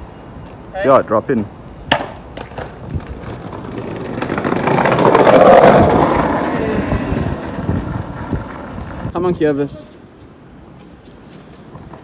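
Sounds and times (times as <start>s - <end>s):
skateboard wheels rolling on ramp: 1.9s - 9.2s, 11.5s - 12.0s.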